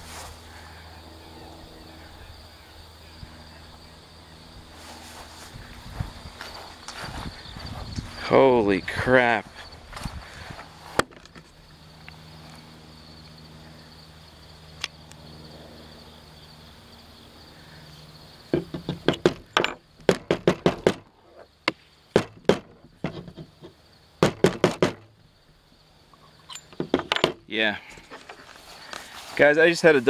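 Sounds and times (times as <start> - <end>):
sharp clicks and knocks: 18.5 - 25.1, 26.5 - 27.4.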